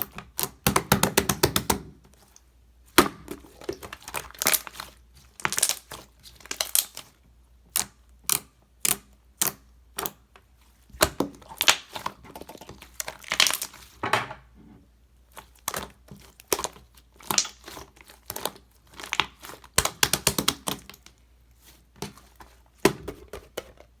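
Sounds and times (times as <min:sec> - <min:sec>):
slime crackling and popping: 0:03.0 - 0:10.2, 0:11.0 - 0:14.0, 0:15.3 - 0:21.2.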